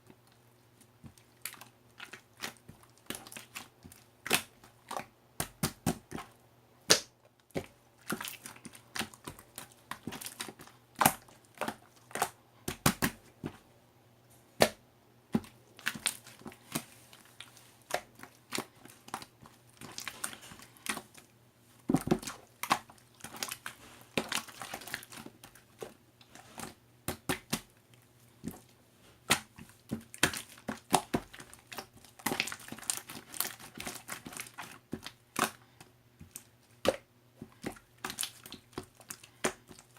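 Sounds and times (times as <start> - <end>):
crinkling and crackling: 15.3 - 39.9.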